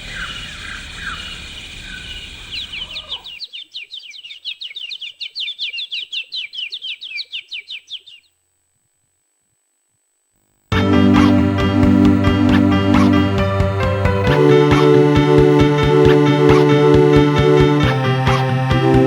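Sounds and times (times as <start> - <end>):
bird trilling chirps: 0.0 - 8.4
croaking calls: 0.0 - 8.5, 11.1 - 13.4, 14.1 - 19.0.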